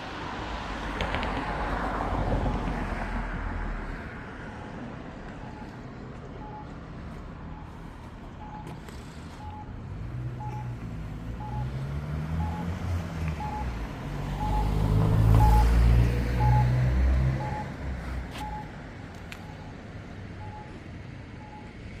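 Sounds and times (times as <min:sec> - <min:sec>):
engine rumble: 0:00.0 - 0:22.0
reversing alarm beeping: 0:06.4 - 0:06.8, 0:08.4 - 0:09.8, 0:10.4 - 0:10.8, 0:11.4 - 0:12.8, 0:13.4 - 0:13.8, 0:14.4 - 0:17.8, 0:18.4 - 0:18.8, 0:19.4 - 0:19.8, 0:20.4 - 0:20.8, 0:21.4 - 0:21.8.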